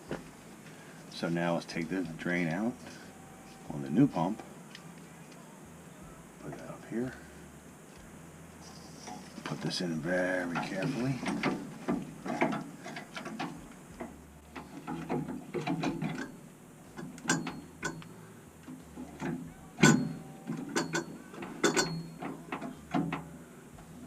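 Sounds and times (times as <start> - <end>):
metallic ring: 15.7 - 18.1, 19.0 - 22.6.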